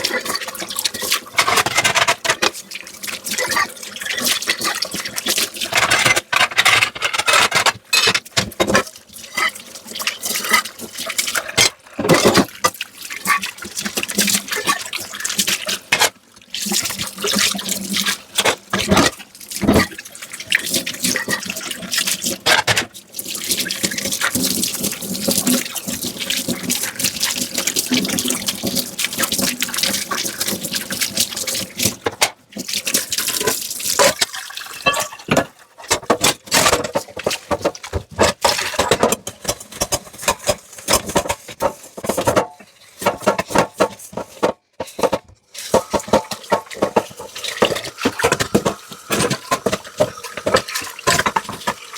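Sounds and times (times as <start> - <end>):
tap water splashing on dishes: 0.0 - 51.9
dishes clattering: 0.1 - 2.6, 5.6 - 8.8, 11.4 - 13.4, 15.8 - 16.2, 22.4 - 22.9, 34.0 - 51.8.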